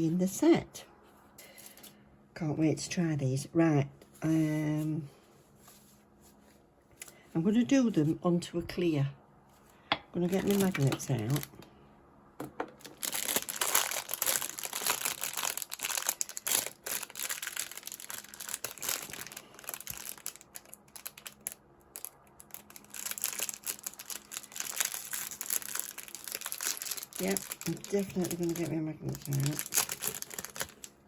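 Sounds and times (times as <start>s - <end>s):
packaging crinkling: 10.2s - 11.6s, 12.6s - 31.0s.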